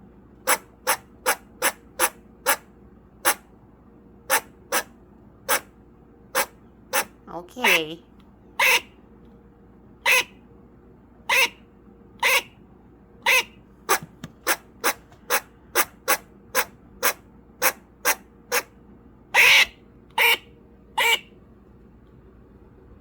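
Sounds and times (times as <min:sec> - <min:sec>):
squirrel barking calls: 0:00.4 - 0:03.5, 0:04.2 - 0:08.0, 0:08.6 - 0:09.0, 0:10.0 - 0:10.4, 0:11.3 - 0:12.6, 0:13.2 - 0:21.4.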